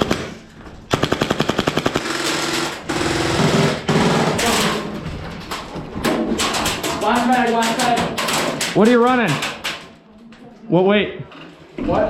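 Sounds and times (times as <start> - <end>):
airsoft guns firing in bursts: 0.0 - 4.6.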